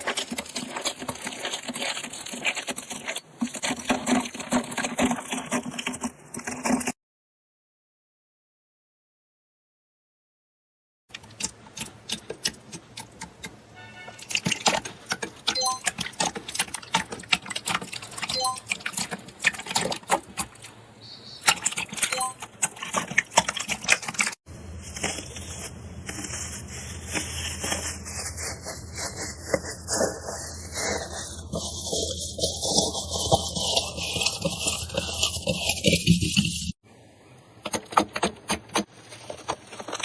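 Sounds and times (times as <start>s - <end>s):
crisp crunching and crackling: 0.0s - 6.9s, 21.4s - 36.8s, 38.9s - 40.0s.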